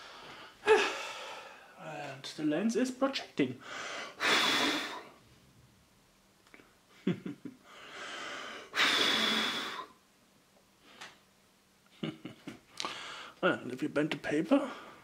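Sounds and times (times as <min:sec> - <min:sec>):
person breathing close: 0:00.0 - 0:01.8, 0:03.6 - 0:05.2, 0:07.6 - 0:10.0, 0:12.7 - 0:13.4.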